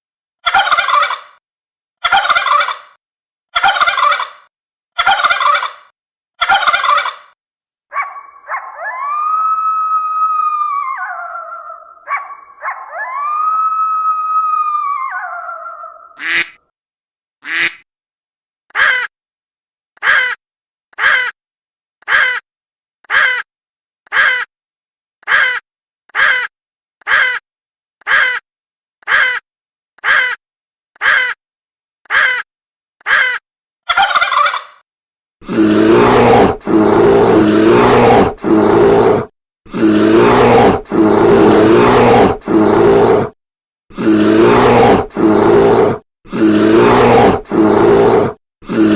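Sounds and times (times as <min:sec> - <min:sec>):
long rough animal calls: 0:35.4 - 0:48.9.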